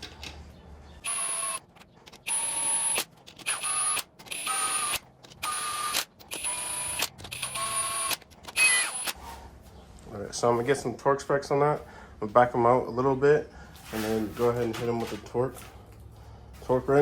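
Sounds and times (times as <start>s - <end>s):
power ratchet whining: 1.0s - 9.2s.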